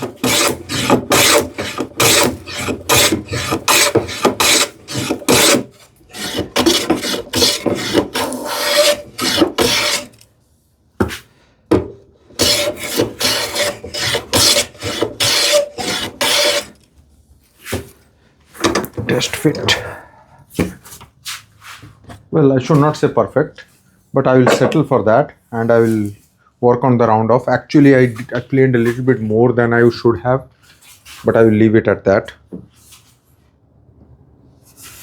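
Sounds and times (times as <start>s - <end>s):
hand plane shaving wood: 0.0s - 10.2s, 12.4s - 16.9s.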